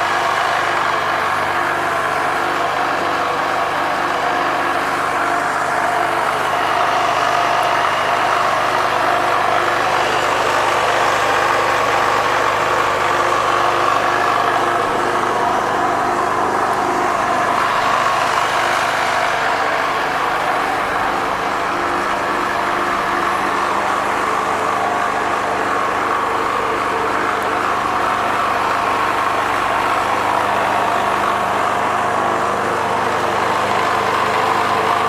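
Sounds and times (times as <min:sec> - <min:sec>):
scooter engine running: 0:00.0 - 0:35.0.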